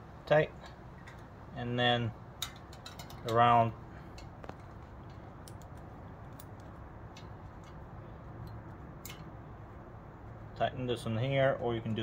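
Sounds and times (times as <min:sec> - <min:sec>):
low steady background hum: 0:00.0 - 0:12.0
light clicks of parts handled: 0:02.4 - 0:09.4.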